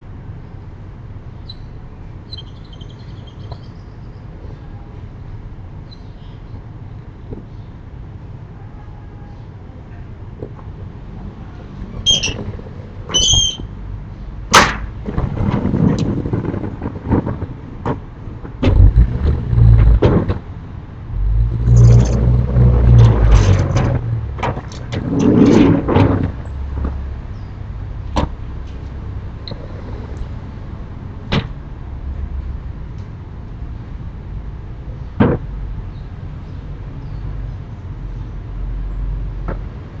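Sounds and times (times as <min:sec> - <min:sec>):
sliding shutters rumbling on track: 0:10.2 - 0:40.0.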